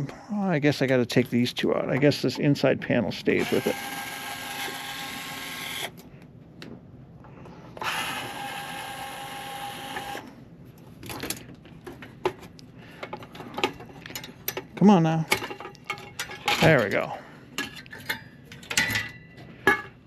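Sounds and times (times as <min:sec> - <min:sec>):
electric screwdriver motor whine: 0:03.4 - 0:06.0, 0:07.8 - 0:10.2
metal parts clicking and clattering: 0:13.0 - 0:17.0, 0:17.6 - 0:20.0.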